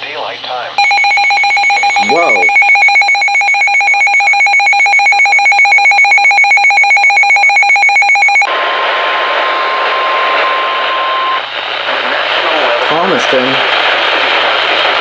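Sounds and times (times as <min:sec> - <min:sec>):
steady alarm tone: 0:00.8 - 0:08.5
warbling electronic alert tone: 0:00.8 - 0:08.5.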